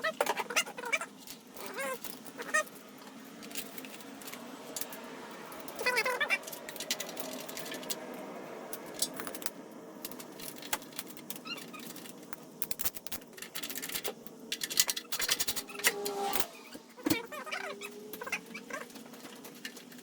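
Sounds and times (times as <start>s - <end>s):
metal parts and tools clinking: 3.4s - 9.5s, 10.1s - 18.4s.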